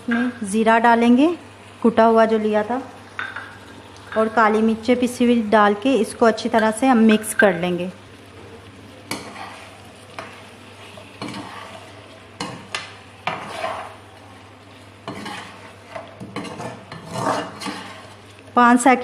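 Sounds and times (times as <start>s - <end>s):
food sizzling in oil: 0.0s - 19.0s
spoon scraping a pan: 9.1s - 14.1s, 15.0s - 18.3s.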